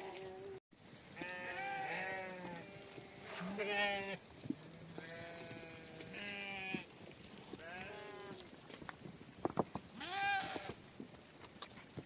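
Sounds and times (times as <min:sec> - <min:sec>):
sheep or goats bleating: 0:01.2 - 0:06.9, 0:07.6 - 0:08.4, 0:10.0 - 0:10.8.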